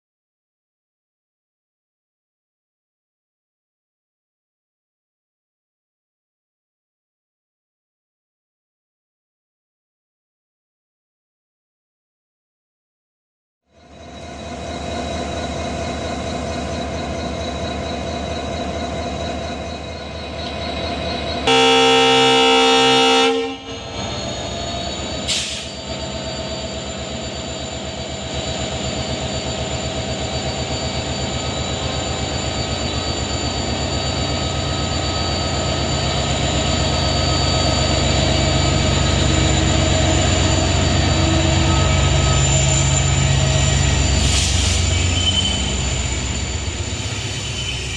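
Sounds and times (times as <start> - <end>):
diesel locomotive engine humming: 13.8 - 47.9
locomotive horn blast: 21.5 - 23.9.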